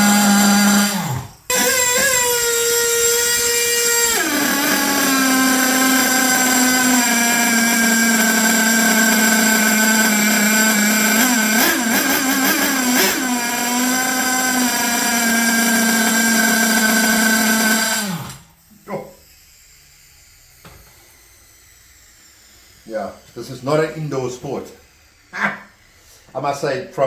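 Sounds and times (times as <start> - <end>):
nitro engine whining: 0.0 - 19.0.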